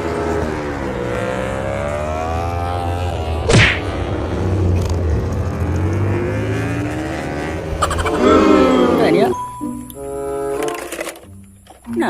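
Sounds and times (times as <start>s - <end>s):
motor engine hum: 0.0s - 12.0s
sharp whack: 3.5s - 3.9s.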